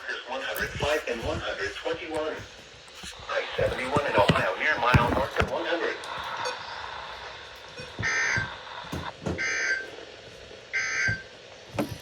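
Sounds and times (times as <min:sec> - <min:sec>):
harsh digital data bursts: 0:06.2 - 0:10.0.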